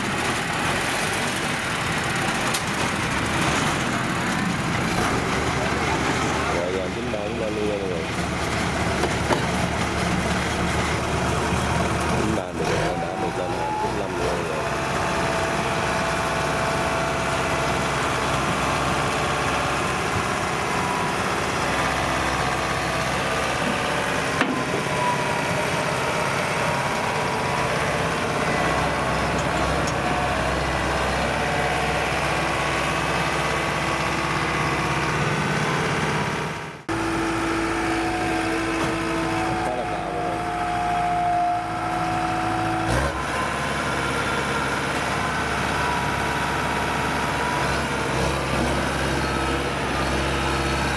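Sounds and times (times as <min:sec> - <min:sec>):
farm machinery diesel engine: 0:00.0 - 0:50.9.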